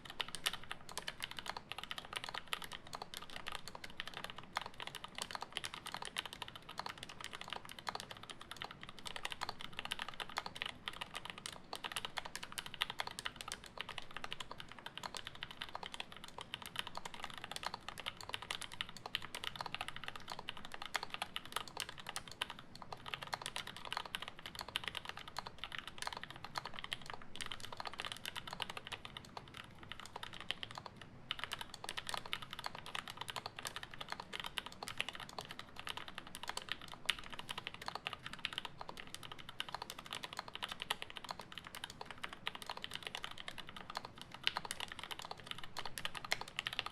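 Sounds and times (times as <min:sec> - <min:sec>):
mechanical keyboard typing: 0:00.0 - 0:46.9.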